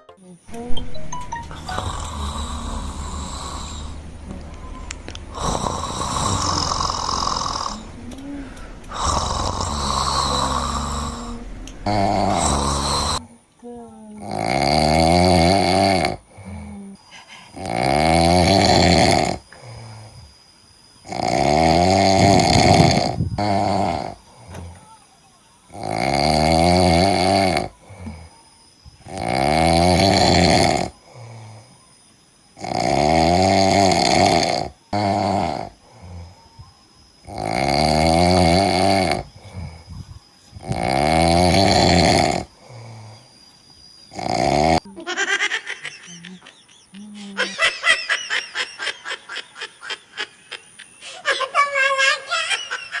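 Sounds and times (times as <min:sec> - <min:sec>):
monkey snoring: 0:01.6 - 0:25.1, 0:25.7 - 0:31.9, 0:32.6 - 0:43.5, 0:44.1 - 0:44.9
faint breaths: 0:01.6 - 0:44.9, 0:50.8 - 0:51.3.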